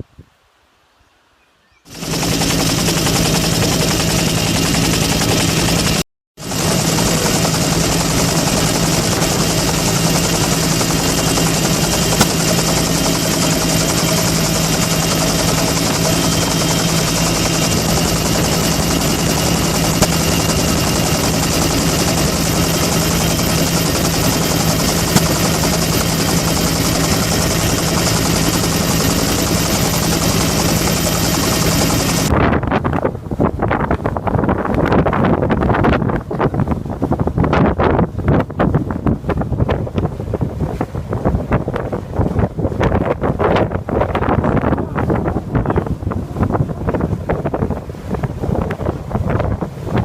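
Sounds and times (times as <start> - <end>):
motor humming: 1.9 - 32.3.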